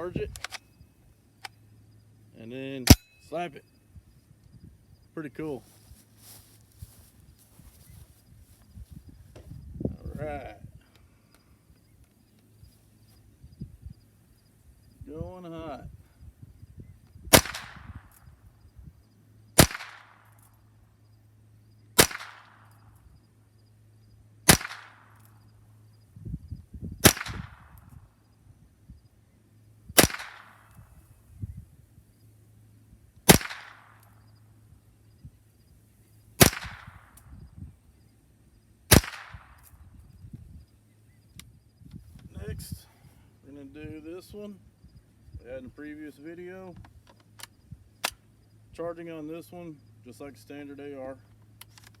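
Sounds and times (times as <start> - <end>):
rifle shots with echo: 17.3 - 18.2, 19.6 - 20.4, 22.0 - 22.8, 24.5 - 25.3, 27.0 - 28.0, 30.0 - 30.8, 33.3 - 34.2, 36.4 - 37.2, 38.9 - 39.7.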